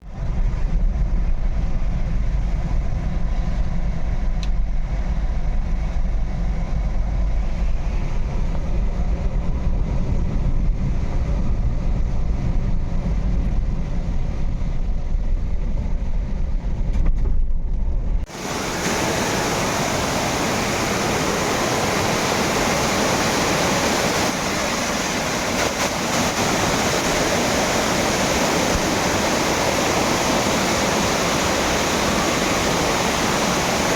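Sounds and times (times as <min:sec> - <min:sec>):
low rumbling noise: 0:00.0 - 0:33.9
waterfall rushing: 0:18.3 - 0:33.9.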